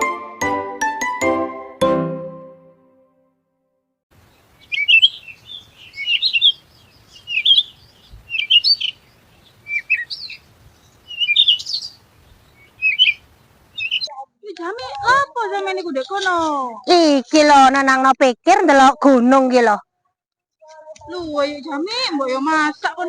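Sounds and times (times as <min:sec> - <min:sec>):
chime-like music note: 0:00.0 - 0:03.1
songbird chirping: 0:04.2 - 0:14.2.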